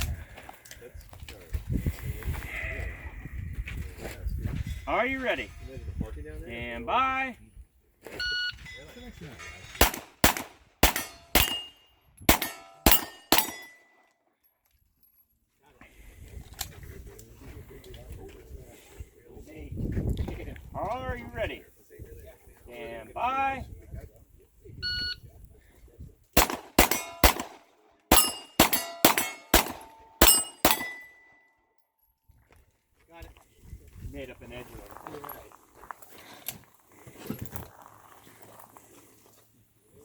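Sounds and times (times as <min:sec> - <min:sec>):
pistol shots: 0:09.8 - 0:13.8, 0:26.4 - 0:31.3
steel plates ringing: 0:10.8 - 0:13.9, 0:26.8 - 0:27.4, 0:28.1 - 0:31.4.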